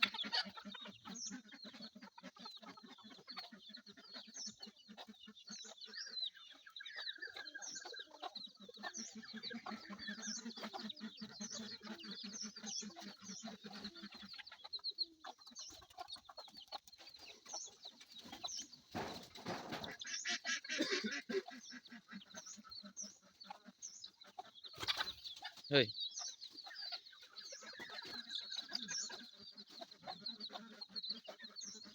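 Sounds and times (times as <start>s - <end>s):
chickens clucking: 0.0s - 31.9s.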